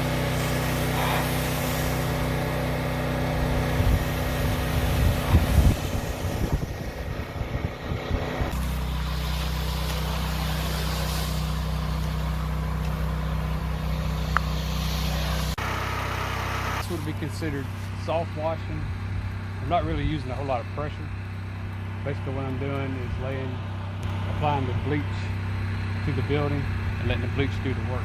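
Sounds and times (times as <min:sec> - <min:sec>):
pressure washer engine running: 0:00.0 - 0:28.0
low rumble: 0:03.3 - 0:15.6.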